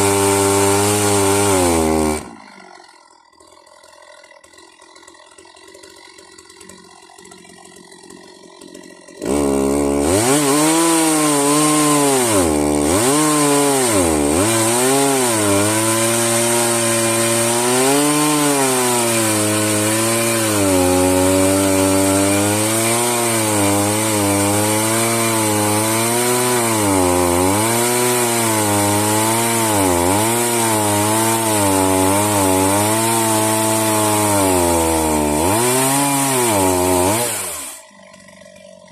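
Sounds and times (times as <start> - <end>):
chainsaw ripping through log: 0.0 - 38.9.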